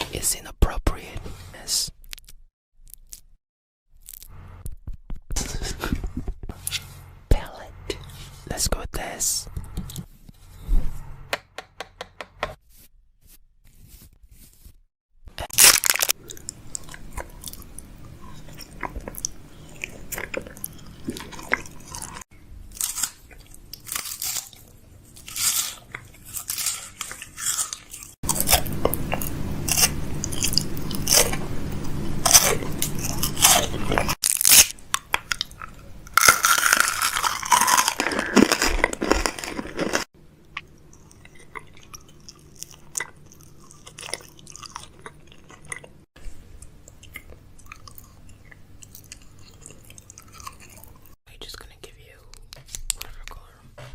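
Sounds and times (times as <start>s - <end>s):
crunching and crackling clicks: 2.0s - 5.3s, 15.4s - 46.0s
low steady hum: 5.4s - 11.4s, 15.3s - 53.9s.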